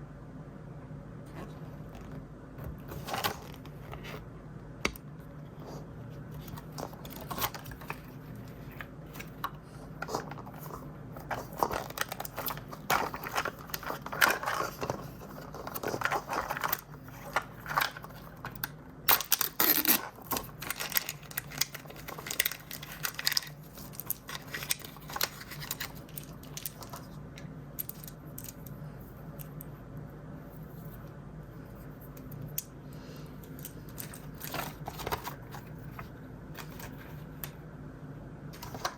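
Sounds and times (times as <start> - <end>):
low steady hum: 0.0 - 38.9
plastic packaging crinkling and tearing: 6.4 - 9.4, 10.0 - 27.2, 34.0 - 37.0.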